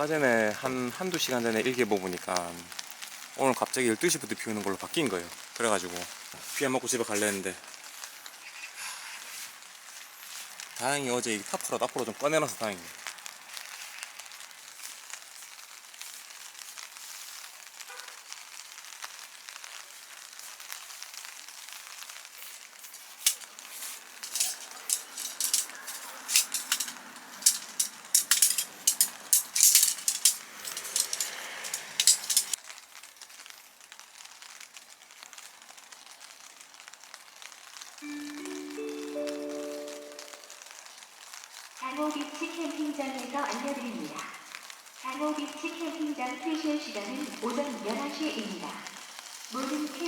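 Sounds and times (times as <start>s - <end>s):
rain pattering on tarp: 0.0s - 50.0s
rising chime notes: 38.0s - 40.7s.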